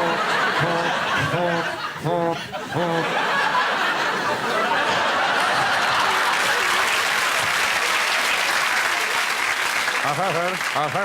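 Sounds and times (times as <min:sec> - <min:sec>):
audience laughter: 0:00.0 - 0:09.3
audience applauding: 0:04.7 - 0:11.0.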